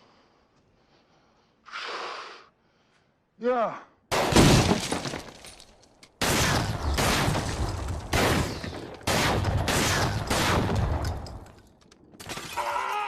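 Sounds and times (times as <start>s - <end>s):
revolver and shotgun fire: 6.2s - 11.1s.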